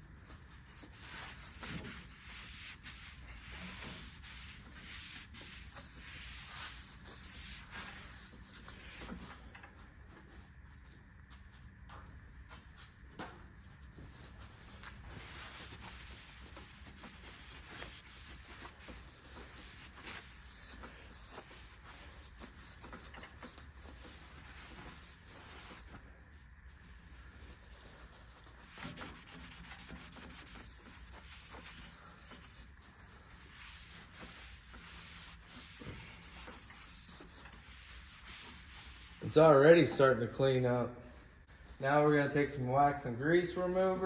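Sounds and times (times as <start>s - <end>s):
pad rubbing over metal table: 0.5s - 9.5s, 15.0s - 26.2s, 26.8s - 40.2s.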